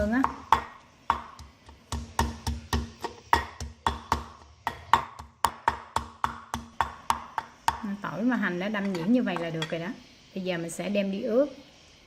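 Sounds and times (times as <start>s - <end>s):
pestle pounding in a mortar: 0.2s - 7.9s.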